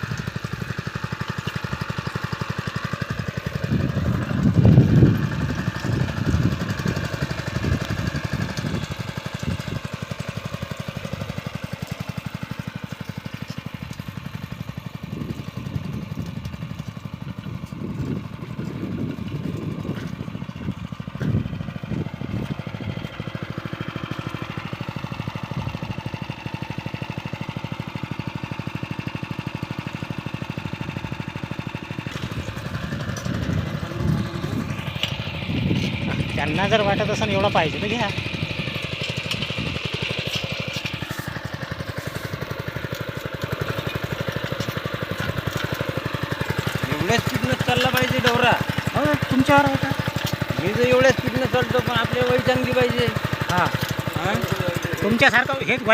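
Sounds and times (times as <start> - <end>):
small engine running: 0.0 - 55.9.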